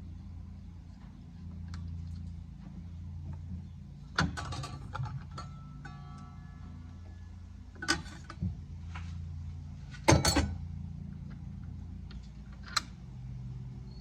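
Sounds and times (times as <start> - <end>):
steady low hum: 0.0 - 14.0
tools knocking and clinking: 10.1 - 10.6.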